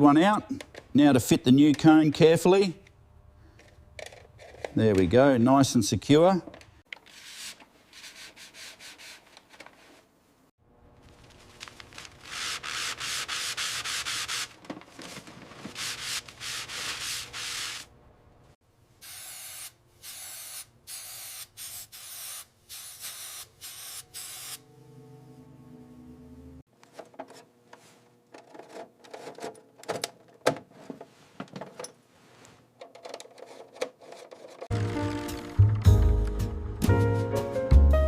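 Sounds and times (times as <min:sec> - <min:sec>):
rubbing or sanding strokes: 0:12.2 - 0:14.6, 0:15.7 - 0:17.9.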